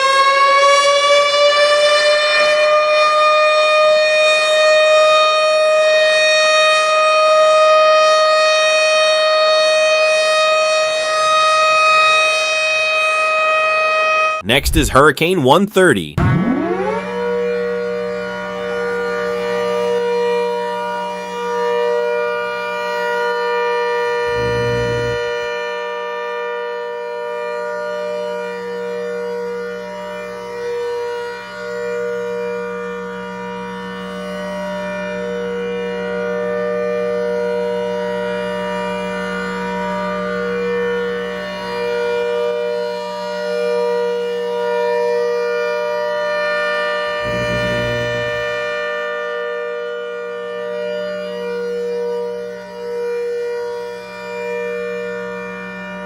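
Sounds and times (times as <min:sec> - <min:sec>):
siren sounding a chord: 0:14.4 - 0:20.6, 0:24.0 - 0:25.5, 0:47.2 - 0:50.8.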